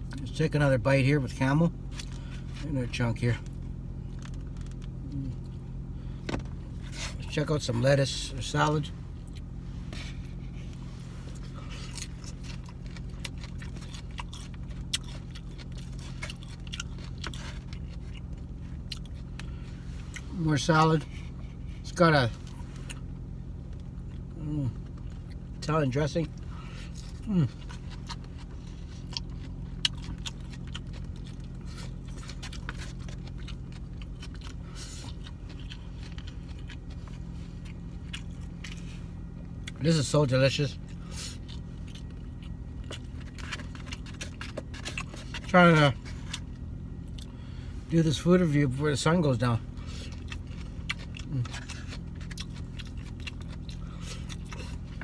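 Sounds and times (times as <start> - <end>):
steady low hum: 0.0 - 55.0
person chewing food: 3.4 - 7.3, 8.7 - 20.3, 26.2 - 39.8, 40.8 - 47.8, 49.6 - 55.0
salad crunching: 8.6 - 20.3, 26.3 - 39.8, 40.8 - 47.6, 49.7 - 55.0.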